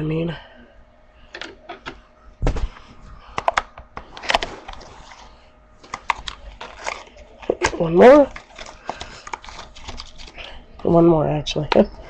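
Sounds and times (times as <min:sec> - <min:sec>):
heavy thump: 0:02.4 - 0:02.9
packaging clicks and taps: 0:05.8 - 0:10.5.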